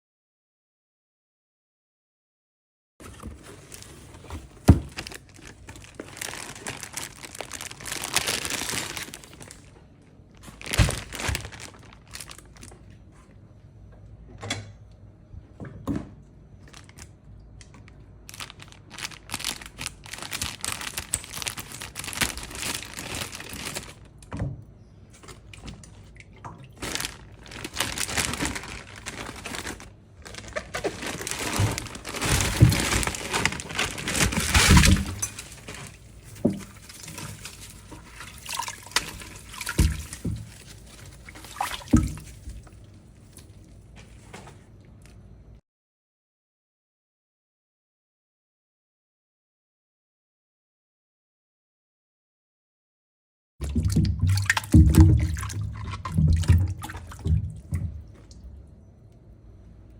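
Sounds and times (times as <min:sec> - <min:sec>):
bags crinkling: 0:03.0 - 0:12.9, 0:16.6 - 0:17.2, 0:17.8 - 0:24.2, 0:26.6 - 0:44.2.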